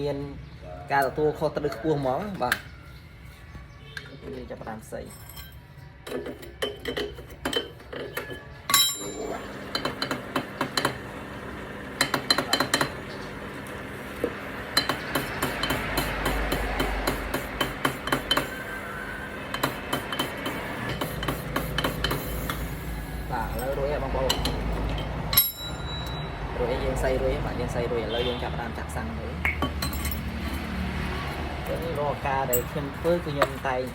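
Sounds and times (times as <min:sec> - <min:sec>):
metal tools clinking on metal: 0:04.8 - 0:10.1, 0:23.3 - 0:26.4, 0:29.6 - 0:30.7, 0:31.8 - 0:33.9.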